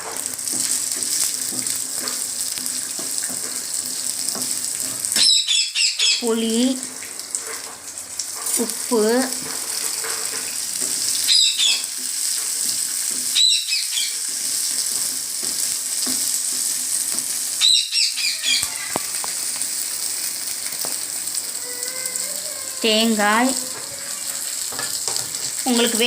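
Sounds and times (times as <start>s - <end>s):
food sizzling in oil: 0.0s - 26.0s
high chirping bursts: 5.2s - 6.2s, 11.2s - 11.9s, 13.4s - 14.2s, 17.6s - 18.9s.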